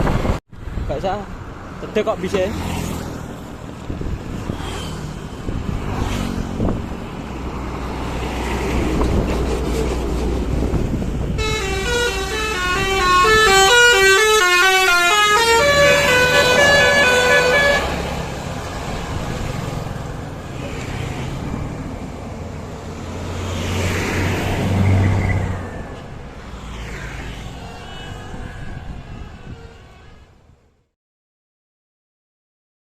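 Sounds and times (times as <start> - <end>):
vehicle passing close: 0.0 - 30.8
bus engine: 0.0 - 30.9
road traffic: 0.0 - 31.0
bus horn playing a tune: 11.3 - 18.2.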